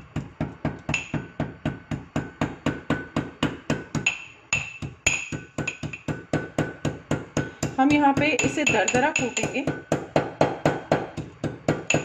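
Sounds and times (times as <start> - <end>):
mortar and pestle pounding spices: 0.0 - 12.0.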